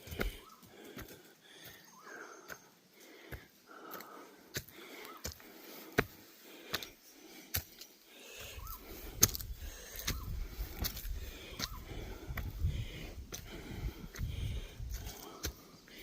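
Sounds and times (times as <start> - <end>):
heavy wheezing breathing: 0.0 - 16.0
wind buffeting microphone: 8.6 - 15.3.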